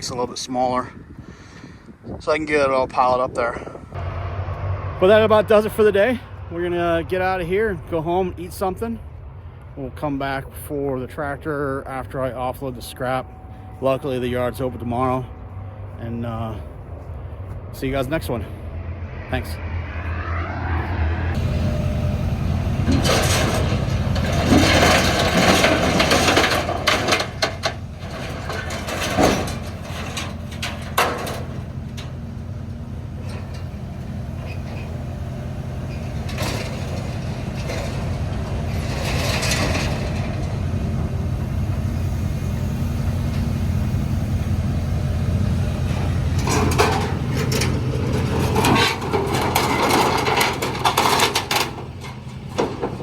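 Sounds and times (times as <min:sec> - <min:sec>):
heavy engine running: 0:03.4 - 0:53.0
clanks and knocks: 0:22.8 - 0:32.3, 0:35.8 - 0:40.8, 0:45.9 - 0:53.0.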